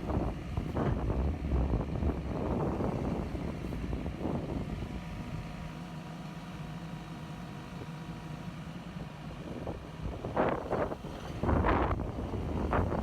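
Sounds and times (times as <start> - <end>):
diesel engine idling: 0.0 - 13.0
wind on microphone: 9.6 - 13.0.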